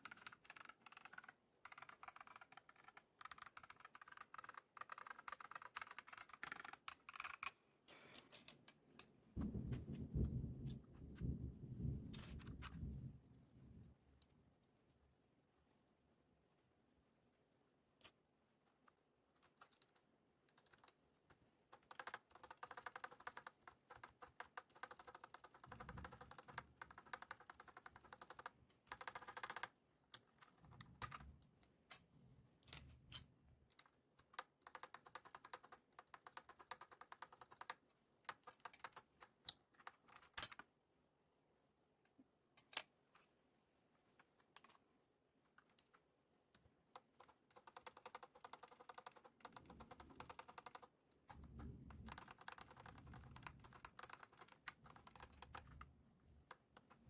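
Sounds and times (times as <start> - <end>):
mechanical keyboard typing: 0.0 - 7.6, 20.5 - 21.0, 21.7 - 29.8, 33.8 - 40.7, 46.9 - 57.0.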